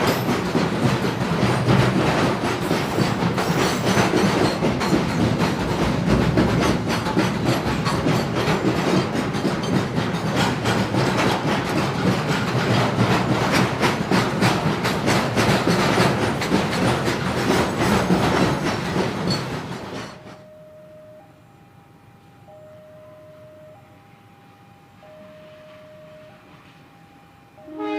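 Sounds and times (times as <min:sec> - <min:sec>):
train wheels clattering over rails: 0:00.0 - 0:20.4.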